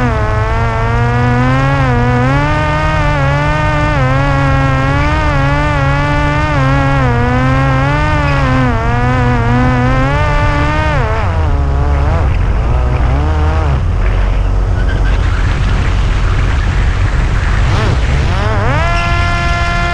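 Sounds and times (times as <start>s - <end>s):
electric motor and propeller droning: 0.0s - 19.9s
wind rumble on microphone: 0.0s - 19.9s.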